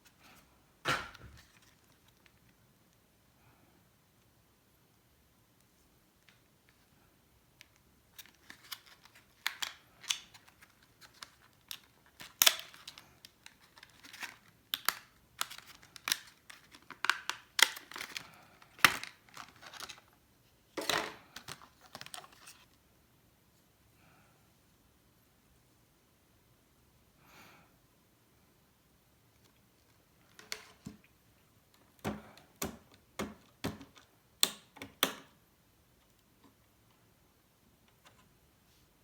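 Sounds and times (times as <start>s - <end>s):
plastic packaging crinkling: 8.2s - 20.2s, 20.8s - 22.7s.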